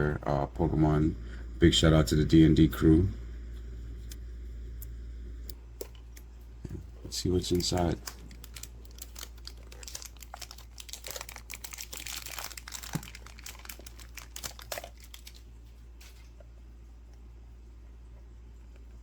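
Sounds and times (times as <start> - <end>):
plastic packaging crinkling and tearing: 7.2 - 16.3.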